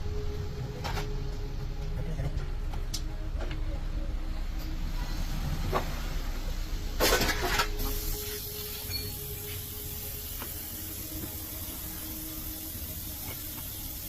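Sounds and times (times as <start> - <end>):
steady high hiss: 7.6 - 14.0
loud hissing burst: 7.7 - 14.0.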